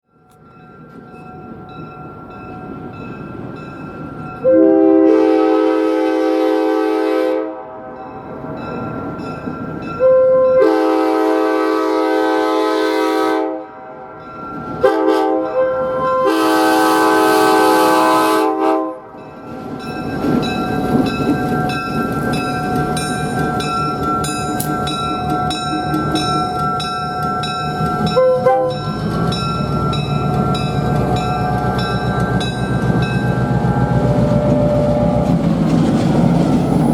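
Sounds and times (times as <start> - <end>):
locomotive air horn: 4.4 - 8.1, 10.0 - 14.1, 14.8 - 19.2, 28.1 - 28.8
train wheel clicks on rail joints: 19.6 - 36.7.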